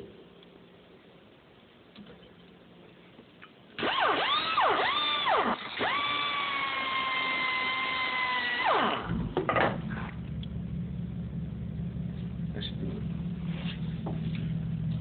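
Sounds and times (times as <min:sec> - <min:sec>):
cutting wheel whining through steel: 0:03.8 - 0:12.4.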